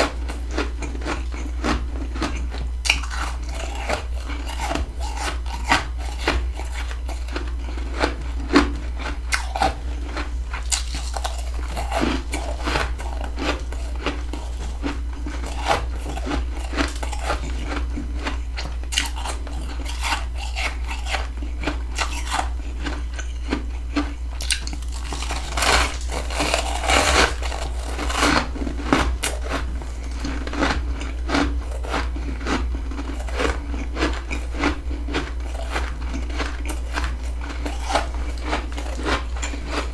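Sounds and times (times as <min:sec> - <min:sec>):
crunching frost: 0:24.4 - 0:39.9.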